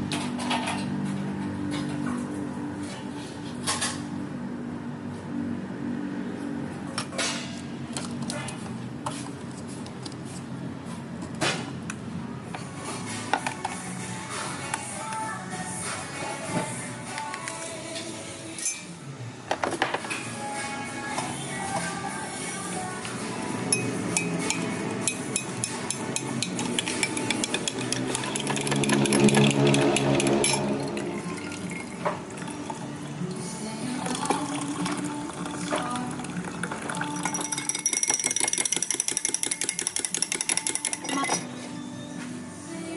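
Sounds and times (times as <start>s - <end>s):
dishes and utensils clinking: 18.6s - 18.9s, 23.7s - 32.2s, 36.9s - 41.5s
utensil tapping against a dish: 25.4s - 30.3s.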